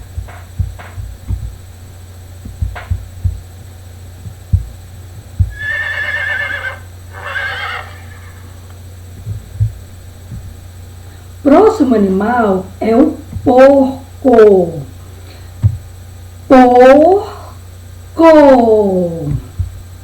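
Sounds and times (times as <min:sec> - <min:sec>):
dull thuds: 0:00.0 - 0:05.7, 0:08.4 - 0:11.6, 0:13.1 - 0:13.8, 0:15.4 - 0:16.0, 0:19.2 - 0:20.0
steady low hum: 0:00.0 - 0:20.0
horse whinnying: 0:05.5 - 0:08.7.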